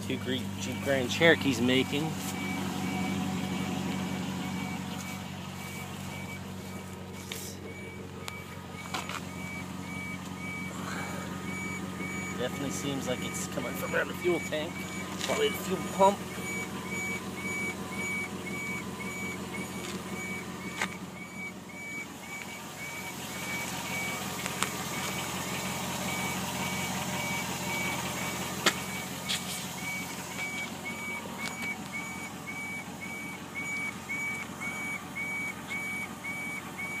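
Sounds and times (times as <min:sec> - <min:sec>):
short high-pitched beeps: 0:02.3 - 0:24.2, 0:29.8 - 0:37.0.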